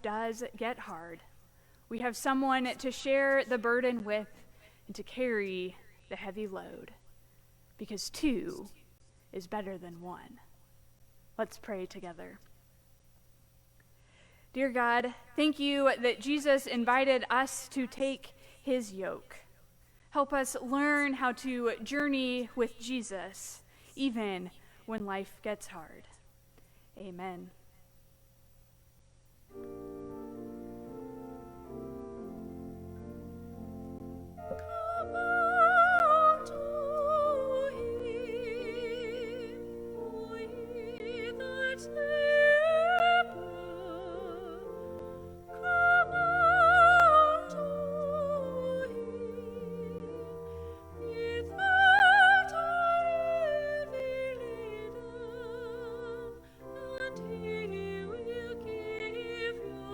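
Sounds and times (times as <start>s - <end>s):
sustained keyboard accompaniment: 29.5s - 59.9s
classical solo singing: 34.5s - 59.9s.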